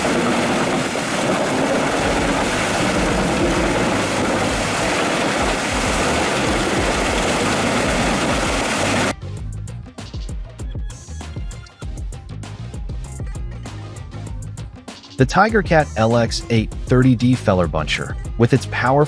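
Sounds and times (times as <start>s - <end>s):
heavy machinery diesel engine: 0.0s - 9.1s.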